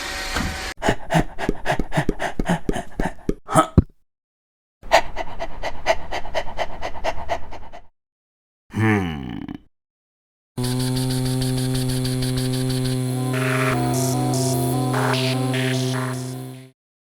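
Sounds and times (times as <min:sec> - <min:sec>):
cartoon dog panting: 0:00.8 - 0:03.4, 0:04.8 - 0:07.9.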